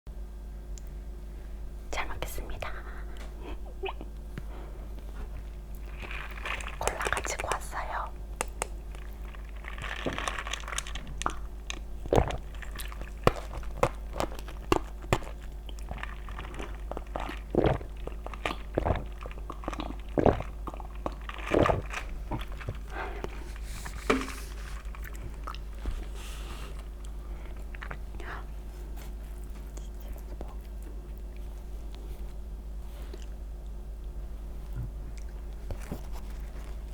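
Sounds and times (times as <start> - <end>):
person chewing crunchy food: 4.9 - 32.3.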